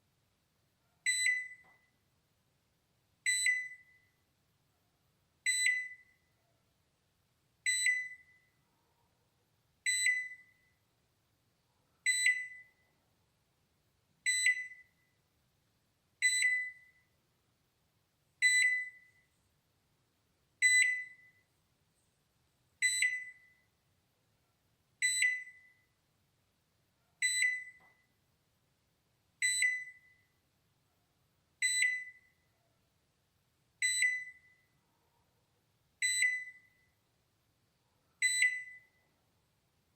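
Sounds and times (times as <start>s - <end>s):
microwave timer ding: 1.1s - 1.7s, 3.3s - 4.0s, 27.2s - 27.9s, 33.8s - 34.5s, 36.0s - 36.7s.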